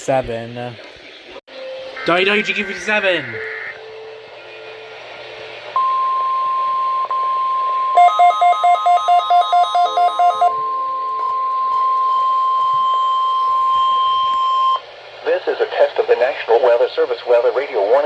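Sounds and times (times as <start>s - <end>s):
steady high alarm tone: 1.5s - 14.8s
rapid electronic beeping: 1.6s - 4.0s.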